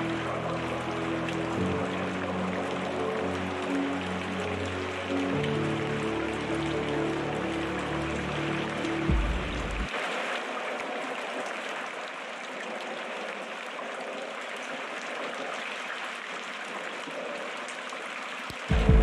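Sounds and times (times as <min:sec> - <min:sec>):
steady rain falling: 0:00.0 - 0:19.0
water drips: 0:00.0 - 0:19.0
low rumble: 0:09.0 - 0:09.9, 0:18.7 - 0:19.0.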